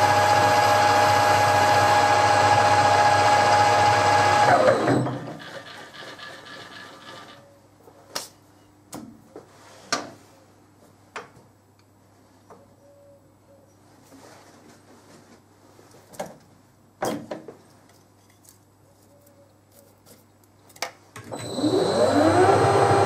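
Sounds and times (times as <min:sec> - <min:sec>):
lathe spindle spinning down: 0:00.0 - 0:05.6, 0:21.3 - 0:23.0
metal lathe whining: 0:00.0 - 0:07.3, 0:21.4 - 0:23.0.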